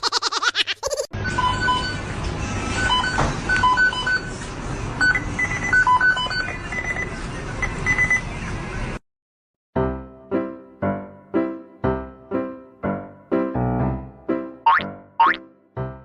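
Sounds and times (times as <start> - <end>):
noisy background: 1.2 - 9.0
piano music: 9.8 - 16.0.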